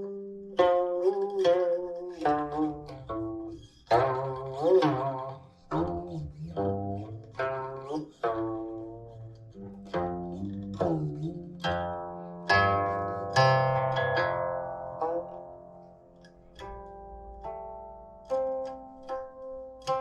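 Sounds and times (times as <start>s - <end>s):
plucked zither notes sliding: 0.0s - 20.0s.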